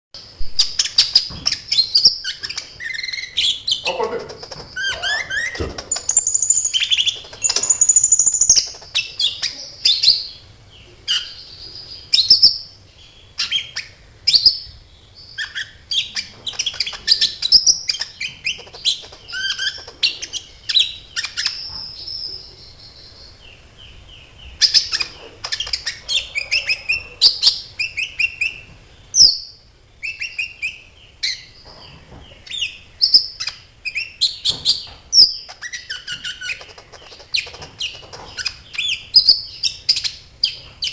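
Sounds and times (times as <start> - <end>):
sunbird chirping and trilling: 0.6 - 31.7.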